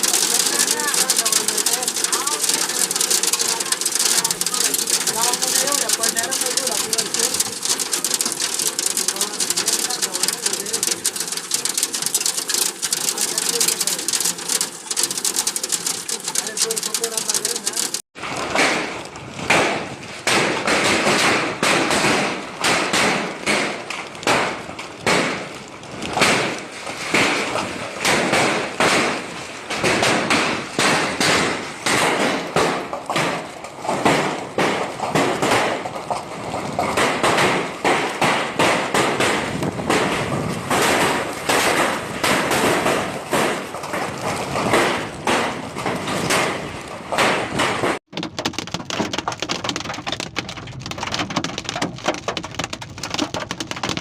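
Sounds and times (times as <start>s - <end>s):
hail on hard surfaces: 0.0s - 18.1s, 47.2s - 54.0s.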